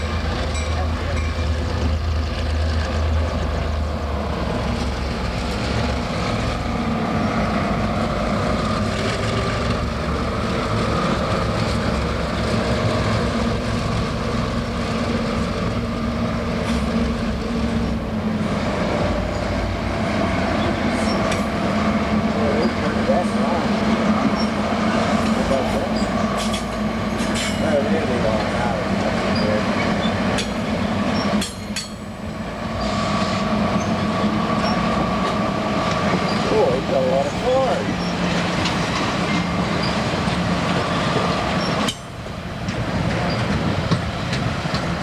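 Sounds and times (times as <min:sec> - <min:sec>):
diesel train engine drone: 0:00.0 - 0:45.0
train rolling rumble: 0:00.0 - 0:45.0.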